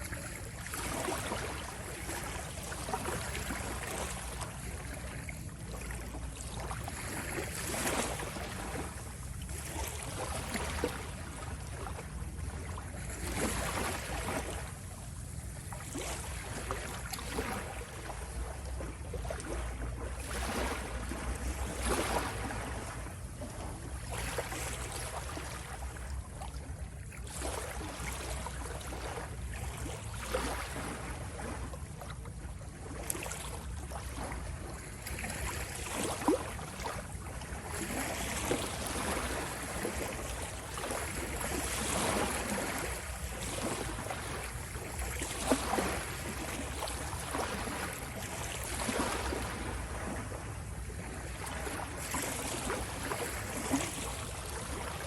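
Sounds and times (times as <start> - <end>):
ocean waves splashing: 37.6 - 50.4.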